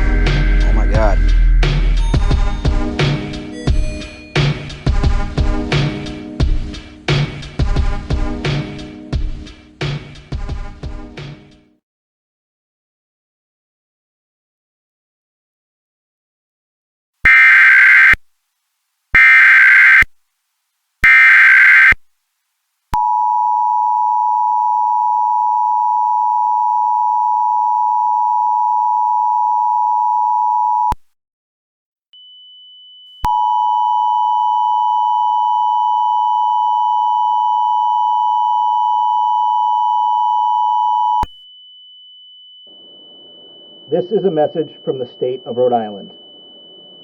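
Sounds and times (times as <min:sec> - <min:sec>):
steady attention tone: 0:00.0 - 0:02.8, 0:17.3 - 0:18.2, 0:19.2 - 0:20.0, 0:21.0 - 0:22.0, 0:42.7 - 0:47.0
digital data bursts: 0:17.3 - 0:18.2, 0:19.2 - 0:20.0, 0:21.0 - 0:22.0
faint high steady tone: 0:39.5 - 0:47.0.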